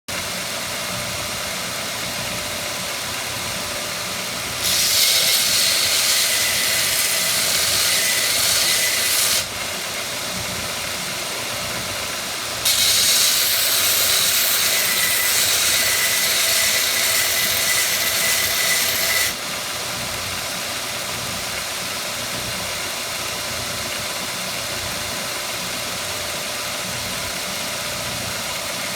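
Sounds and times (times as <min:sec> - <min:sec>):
blade grinding hiss: 0:04.5 - 0:09.6, 0:12.6 - 0:19.4.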